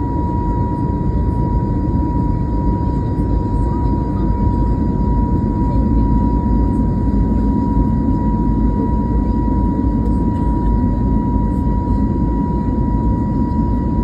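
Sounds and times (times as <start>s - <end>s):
jet engines rumbling: 0.0s - 14.0s.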